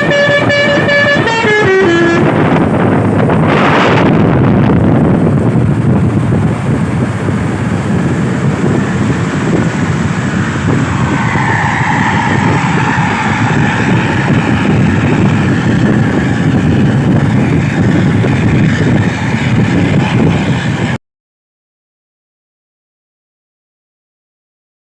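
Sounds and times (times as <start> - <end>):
bus horn playing wavering tune: 0.0 - 2.9
bus engine rumble: 0.0 - 21.0
road noise: 0.0 - 21.0.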